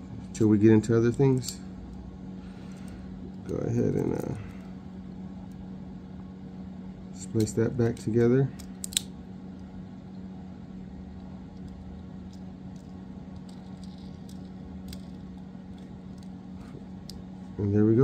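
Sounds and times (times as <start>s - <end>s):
steady low hum: 0.0s - 18.0s
small toy parts clicking: 7.8s - 9.1s, 11.5s - 16.3s.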